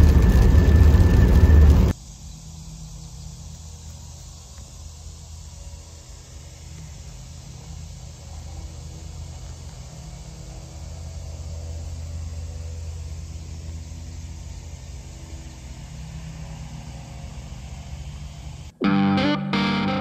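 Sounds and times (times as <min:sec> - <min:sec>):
motor vehicle low rumble: 0:00.0 - 0:02.0.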